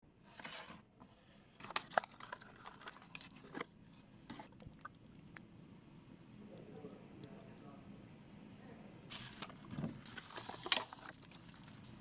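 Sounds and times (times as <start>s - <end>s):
packaging crinkling: 1.6s - 3.7s, 9.1s - 12.0s.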